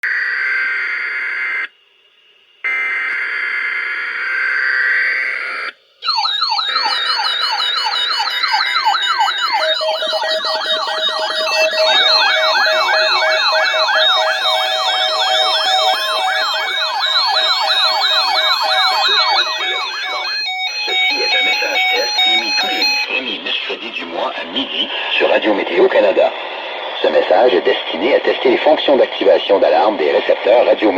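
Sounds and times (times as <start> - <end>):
electronic sirens sweeping: 2.6 - 30.9
steady tone: 5.2 - 29.0.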